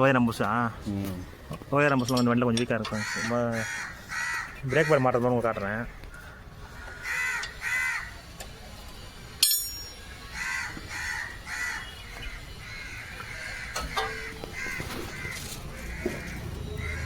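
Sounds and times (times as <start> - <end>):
crows cawing: 2.8 - 8.3, 10.2 - 17.0
sharp metallic clink: 9.4 - 10.1.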